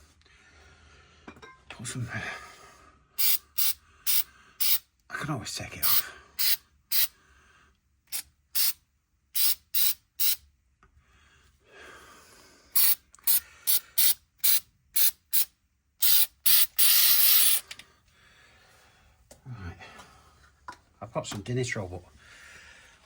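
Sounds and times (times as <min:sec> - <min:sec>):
aerosol spray can bursts: 0:03.2 - 0:04.8, 0:05.8 - 0:07.1, 0:08.1 - 0:08.8, 0:09.4 - 0:10.4, 0:12.8 - 0:17.6.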